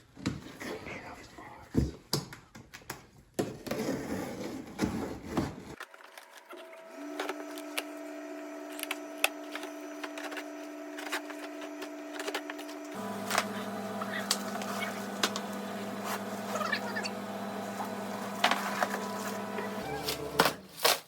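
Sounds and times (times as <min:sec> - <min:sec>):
small motor whining: 0:06.4 - 0:20.7
cardboard being torn and rustling: 0:20.0 - 0:21.0.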